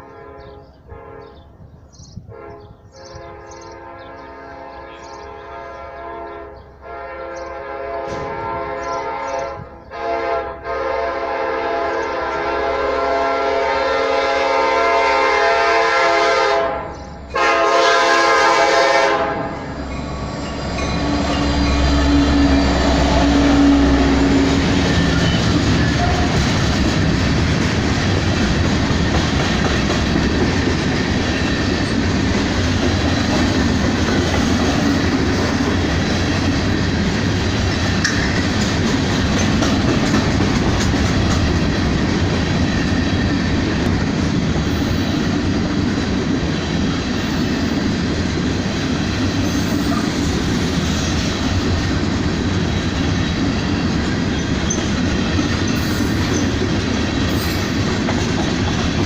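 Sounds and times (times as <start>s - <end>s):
freight train wheels rumbling on rails: 0.0s - 59.0s.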